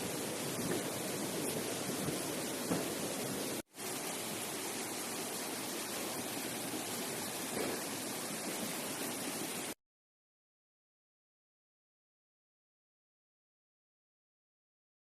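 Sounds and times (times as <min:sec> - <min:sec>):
flowing water rushing: 0:00.0 - 0:09.8.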